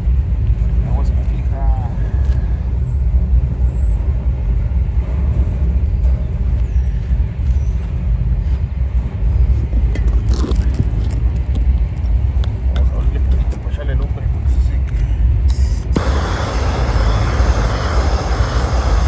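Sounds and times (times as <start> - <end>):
roofing torch roaring: 15.6 - 19.0.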